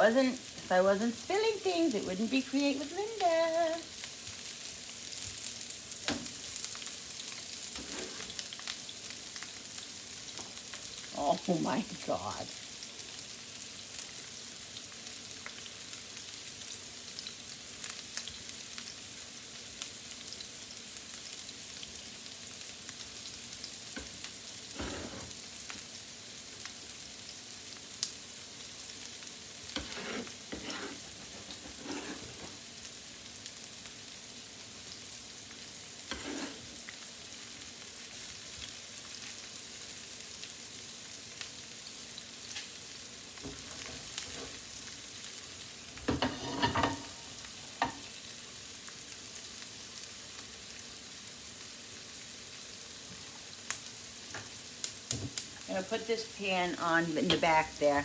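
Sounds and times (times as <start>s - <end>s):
onions sizzling in a pan: 0.0s - 58.0s
stirring sounds: 7.7s - 8.5s, 29.7s - 32.7s, 36.1s - 36.9s.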